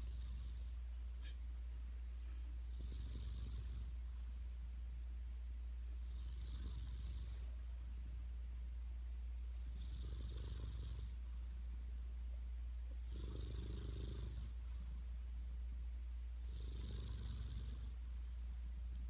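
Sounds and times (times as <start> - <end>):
cat snoring: 0.0 - 1.4, 2.6 - 4.0, 5.9 - 7.5, 9.6 - 11.2, 13.0 - 15.1, 16.4 - 18.0.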